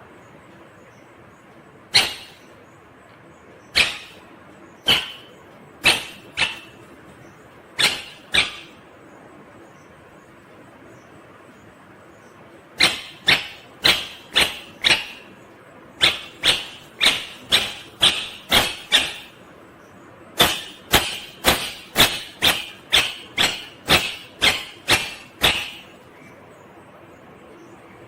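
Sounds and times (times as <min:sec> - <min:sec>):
parrot calling sharply: 0:01.9 - 0:02.6, 0:03.7 - 0:06.9, 0:07.8 - 0:08.8, 0:12.8 - 0:15.3, 0:16.0 - 0:19.4.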